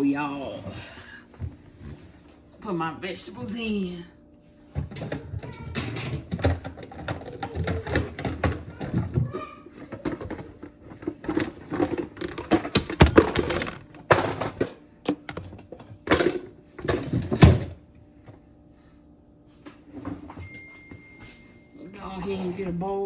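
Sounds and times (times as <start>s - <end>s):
kitchen knocks and thunks: 4.7s - 17.8s
bowls and utensils clattering: 4.8s - 17.6s.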